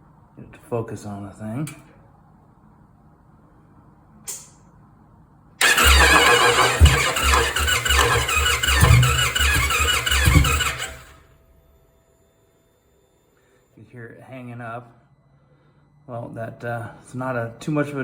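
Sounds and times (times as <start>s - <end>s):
short click: 4.3s - 4.6s
starter cranking motorcycle engine: 5.6s - 11.2s.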